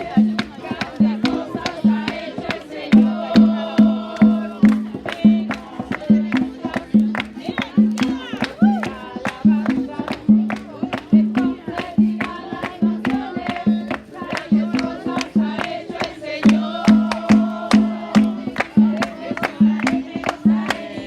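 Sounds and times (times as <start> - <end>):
percussion beat: 0.0 - 21.0
voices singing: 0.0 - 21.0.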